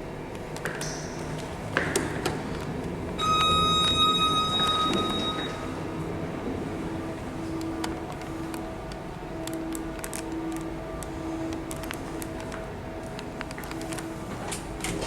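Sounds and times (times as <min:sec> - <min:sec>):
lift lobby hum: 0:00.0 - 0:15.0
lift chime electronic tone: 0:03.2 - 0:07.1.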